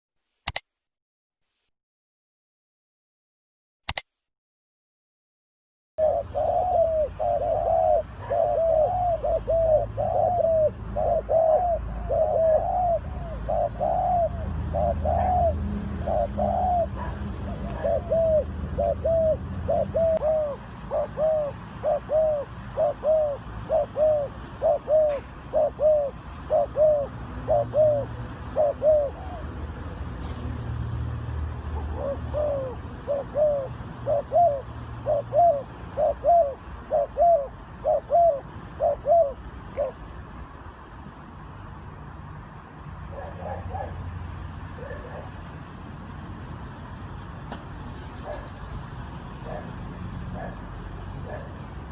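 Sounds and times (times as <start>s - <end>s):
doves cooing: 6.0s - 29.8s, 31.7s - 40.1s, 43.1s - 44.0s, 44.7s - 45.5s, 48.2s - 48.6s, 49.4s - 51.9s.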